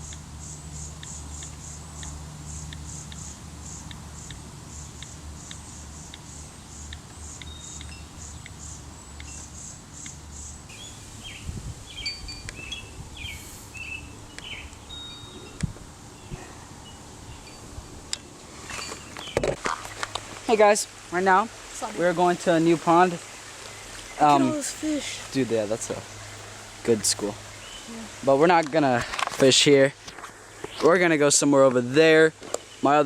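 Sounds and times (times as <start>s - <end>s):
bird singing varied chirps: 0.0s - 17.7s, 25.9s - 28.2s
high repeated chirping: 0.0s - 17.7s.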